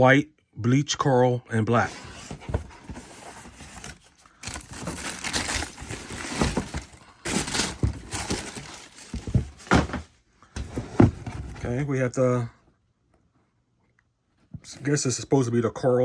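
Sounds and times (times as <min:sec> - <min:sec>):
paper crinkling and rustling: 0:01.9 - 0:11.8.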